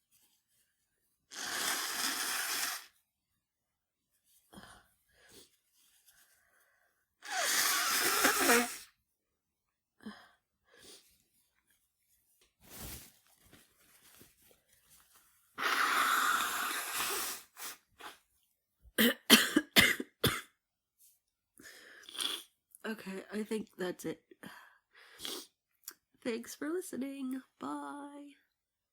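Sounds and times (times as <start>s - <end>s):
woman coughing: 19.0s - 20.6s.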